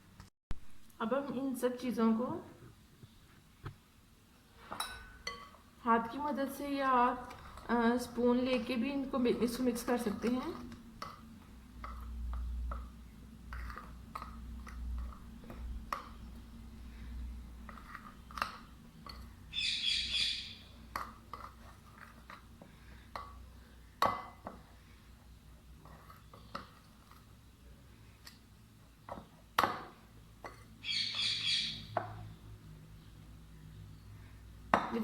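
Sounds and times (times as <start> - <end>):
batter being mixed by hand: 6.4 - 19.5, 20.6 - 30.8
bird chirping: 19.5 - 20.8, 30.8 - 32.0.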